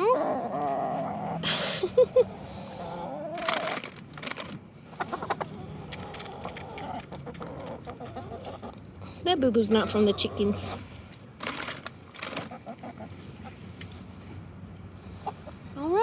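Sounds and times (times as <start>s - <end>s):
chickens clucking: 4.8s - 9.0s, 12.2s - 13.8s, 14.9s - 15.9s.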